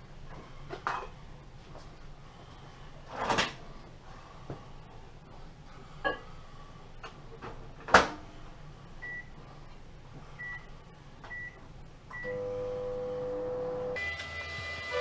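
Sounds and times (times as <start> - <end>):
microwave humming: 12.2 - 15.0.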